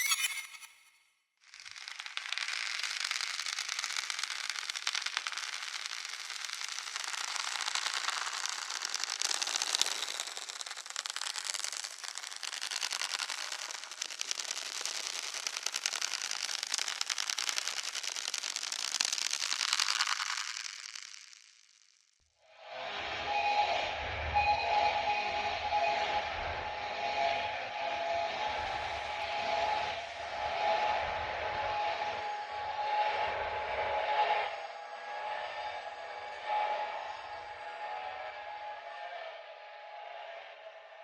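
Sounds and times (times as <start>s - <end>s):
dense continuous crackling: 1.4s - 22.2s.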